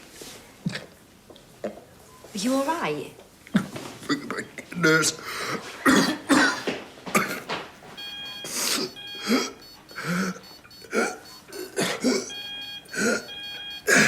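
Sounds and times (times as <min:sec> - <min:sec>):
man coughing and choking: 0:05.8 - 0:07.5, 0:08.5 - 0:14.0
electronic beeping tone: 0:08.0 - 0:11.6, 0:12.2 - 0:14.0.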